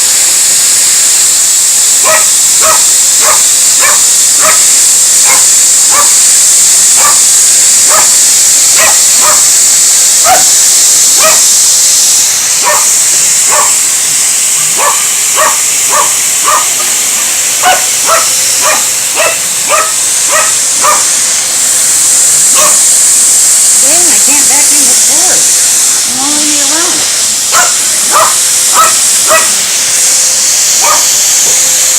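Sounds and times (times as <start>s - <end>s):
vacuum cleaner hissing: 0.0s - 31.9s
dog barking: 2.0s - 6.2s, 7.0s - 7.3s, 7.9s - 8.2s, 8.8s - 9.5s, 10.2s - 10.6s, 11.2s - 11.4s, 12.6s - 12.9s, 13.5s - 13.8s, 14.8s - 16.9s, 17.6s - 21.1s, 22.6s - 22.8s, 27.5s - 29.6s, 30.8s - 31.1s.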